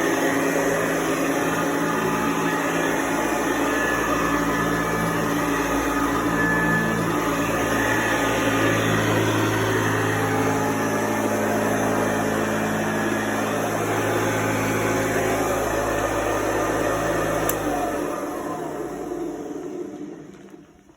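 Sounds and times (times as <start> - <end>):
upright vacuum cleaner running: 0.0 - 20.9
sharp click: 17.4 - 17.7.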